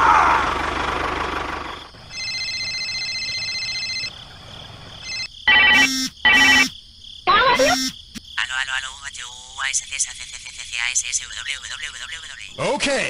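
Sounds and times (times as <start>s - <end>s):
electronic ringtone tone: 2.1s - 4.1s, 5.0s - 6.7s, 7.4s - 8.0s
short electronic beeps: 5.5s - 6.7s, 7.3s - 8.0s.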